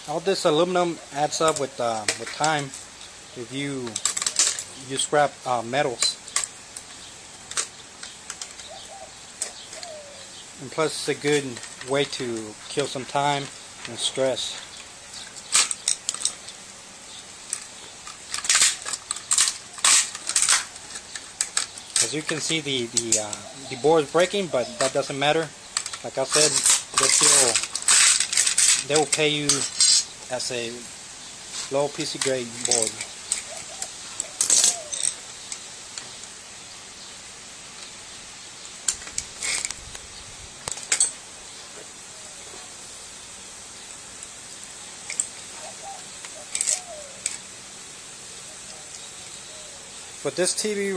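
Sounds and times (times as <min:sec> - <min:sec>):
metal tools clinking: 0:11.0 - 0:16.6, 0:17.5 - 0:30.8, 0:31.6 - 0:36.0, 0:38.9 - 0:39.8, 0:40.6 - 0:41.2, 0:46.2 - 0:47.5.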